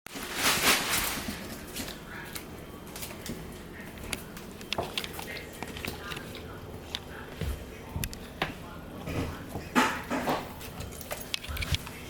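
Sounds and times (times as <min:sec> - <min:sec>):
loud rustle: 0:00.1 - 0:01.5.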